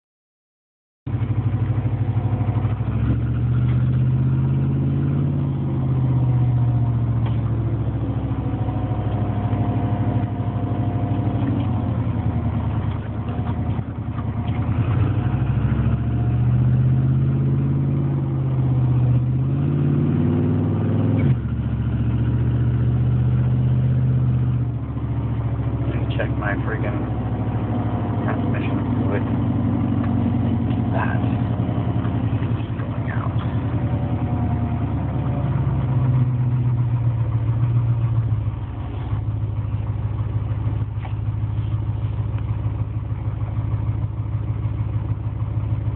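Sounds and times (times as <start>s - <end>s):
car engine idling: 1.1s - 45.9s
rapid rhythmic engine knock: 24.9s - 33.7s.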